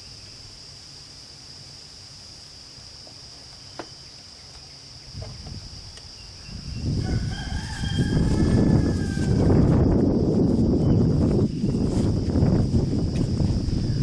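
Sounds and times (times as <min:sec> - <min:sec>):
high insect buzz: 0:00.0 - 0:14.0
rooster crowing: 0:06.9 - 0:10.0.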